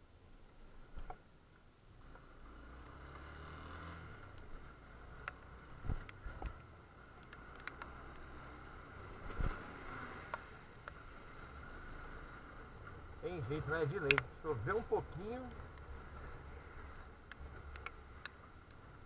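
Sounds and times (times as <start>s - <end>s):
motorcycle engine hum: 0.0s - 19.0s
wind and road noise: 0.0s - 19.0s
ticks: 6.0s - 8.3s, 13.9s - 14.3s, 17.2s - 18.8s.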